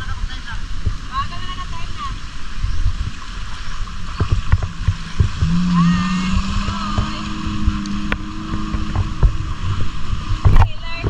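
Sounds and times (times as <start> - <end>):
jet ski engine running: 0.0 - 11.0
wind buffeting microphone: 0.0 - 11.0.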